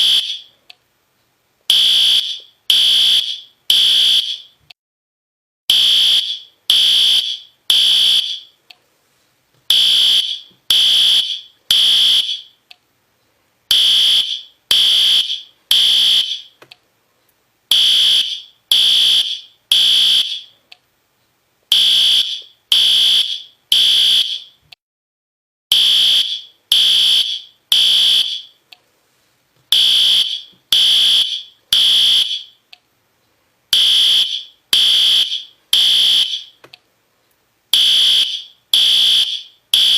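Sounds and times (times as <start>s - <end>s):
fire alarm horn beeping: 0.0s - 0.5s, 1.7s - 4.6s, 5.7s - 8.6s, 9.7s - 12.6s, 13.7s - 16.6s, 17.7s - 20.5s, 21.7s - 24.6s, 25.7s - 28.6s, 29.7s - 32.6s, 33.8s - 36.6s, 37.8s - 39.9s.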